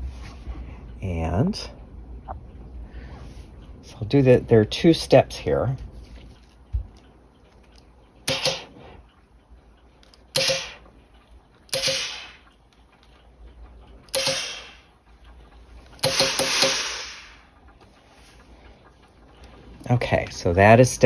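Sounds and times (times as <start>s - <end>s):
steam iron hissing: 10.4s - 10.9s, 11.7s - 12.4s, 14.1s - 14.8s, 16.0s - 17.5s.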